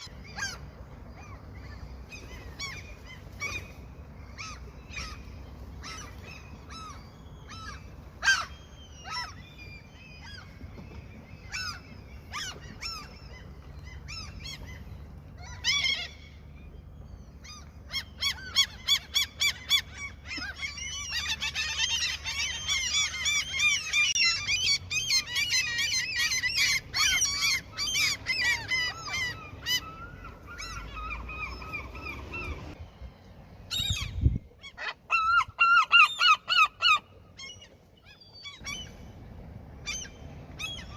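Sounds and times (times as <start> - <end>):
seagulls calling: 0.0 - 40.9.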